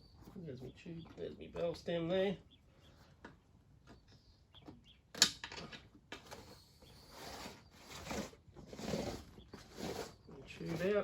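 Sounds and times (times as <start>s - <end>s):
rubber rubbing against tyre: 6.5s - 11.0s.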